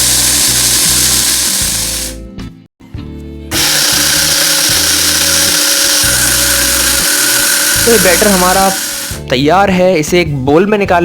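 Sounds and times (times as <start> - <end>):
mixer grinder running: 0.0 - 2.2, 3.5 - 9.3.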